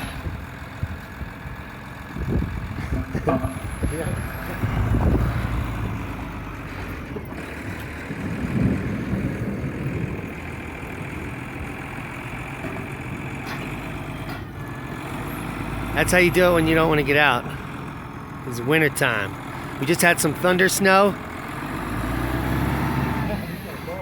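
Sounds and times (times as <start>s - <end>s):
forklift engine running: 0.0s - 24.0s
faint knocks: 2.8s - 3.8s.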